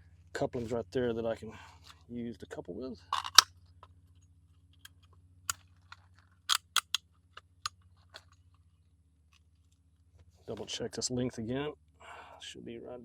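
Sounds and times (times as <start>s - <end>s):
plastic pipe clicks and knocks: 3.2s - 3.4s.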